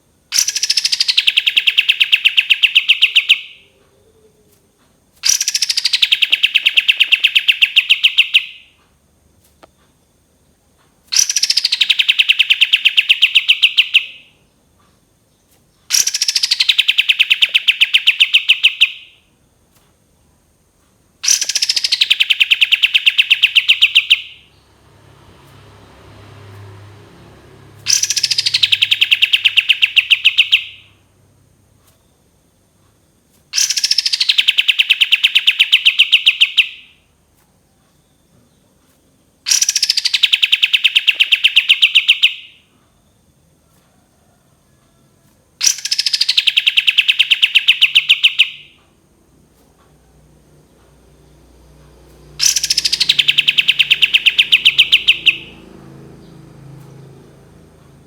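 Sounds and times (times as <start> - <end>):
bird whistle and rattling trill: 0.3 - 3.7, 5.2 - 8.7, 11.1 - 14.3, 15.9 - 19.2, 21.2 - 25.6, 27.8 - 31.0, 33.5 - 37.0, 39.4 - 42.6, 45.6 - 48.8, 52.4 - 56.4.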